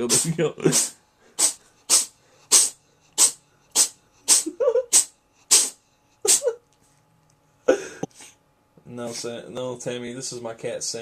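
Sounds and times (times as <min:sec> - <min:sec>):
cat sneezing: 0:00.0 - 0:06.6.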